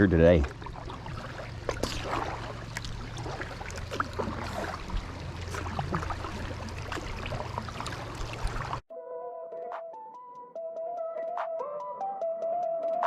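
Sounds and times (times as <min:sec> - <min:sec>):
water splashing and trickling: 0:00.0 - 0:08.8
small water drips: 0:00.4 - 0:08.8.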